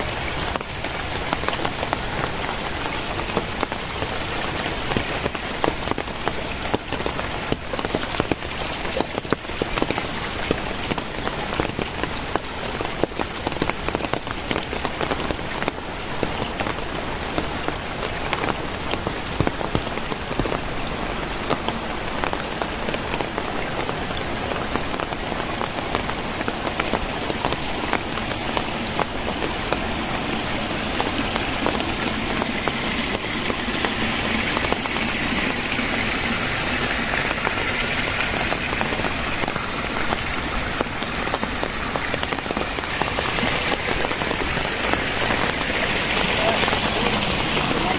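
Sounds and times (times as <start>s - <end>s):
heavy rain pouring: 0.0s - 47.9s.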